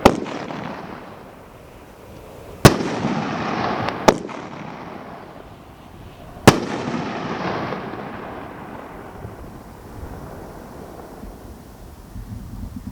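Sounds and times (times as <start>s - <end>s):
firework bang: 0.0s - 1.4s, 2.6s - 5.4s, 6.0s - 11.8s
noisy firework tail: 0.0s - 12.9s.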